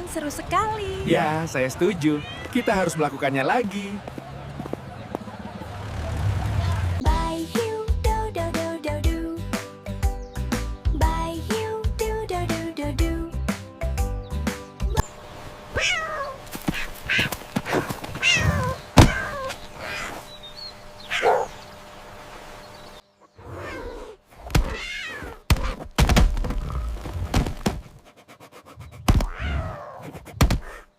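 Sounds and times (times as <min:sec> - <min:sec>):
cat meowing: 0:02.2 - 0:02.9, 0:15.8 - 0:20.2, 0:23.4 - 0:25.4, 0:29.3 - 0:30.0
sharp thuds and knocks: 0:19.0 - 0:19.3, 0:24.4 - 0:24.8, 0:25.4 - 0:28.0, 0:29.0 - 0:29.4, 0:30.2 - 0:30.8.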